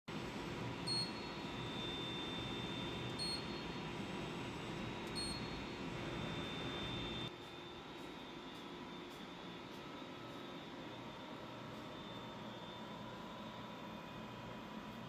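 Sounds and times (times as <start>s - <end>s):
machine hum and hiss: 0.1s - 15.0s
thin high whine: 0.8s - 7.3s.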